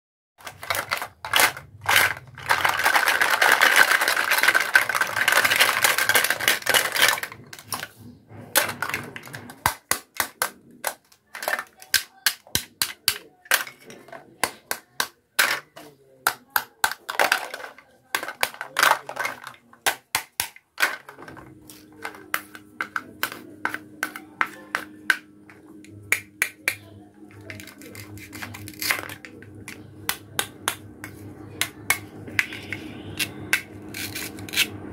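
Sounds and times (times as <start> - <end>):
plastic toy pieces clicking: 0.4 - 7.9, 8.5 - 21.4, 22.0 - 34.8
steady low hum: 20.8 - 34.9.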